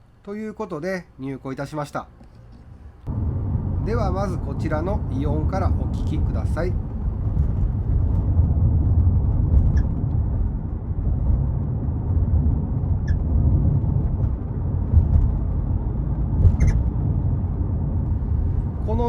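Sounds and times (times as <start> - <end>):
low road and cabin rumble: 0.0 - 19.0
suspension squeaks: 13.0 - 13.3, 16.4 - 16.9.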